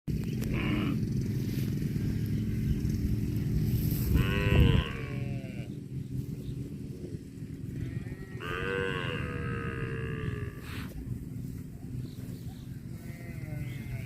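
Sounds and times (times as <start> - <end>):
cow mooing: 0.4 - 1.2, 4.0 - 5.8, 7.7 - 10.9, 13.0 - 14.0.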